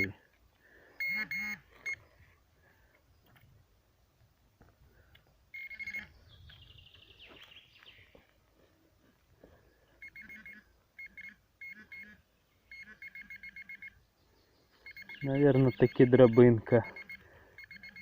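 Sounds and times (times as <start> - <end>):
metal detector beeping: 1.0 - 2.1, 5.5 - 6.2, 10.0 - 14.0, 14.8 - 18.0.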